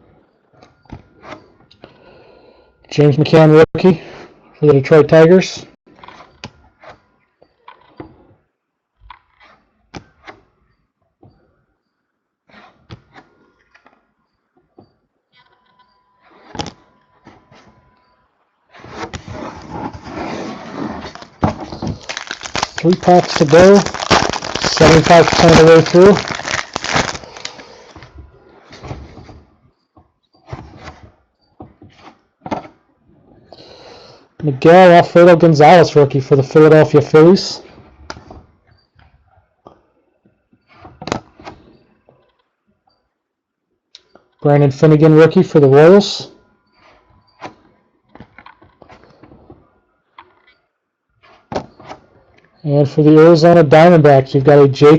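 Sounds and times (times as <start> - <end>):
foil card pack rustling: 20.8 - 28.0.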